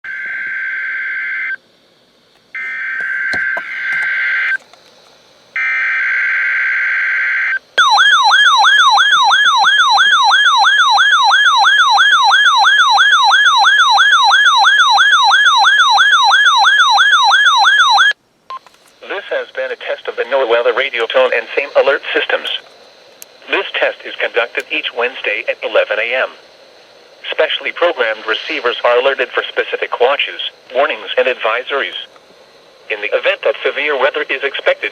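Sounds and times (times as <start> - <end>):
faint radio static: 2.3 - 5.5, 18.5 - 34.9.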